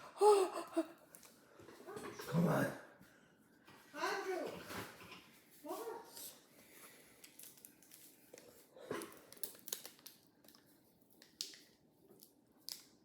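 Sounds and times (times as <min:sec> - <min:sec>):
person crunching chips: 0:07.2 - 0:11.6.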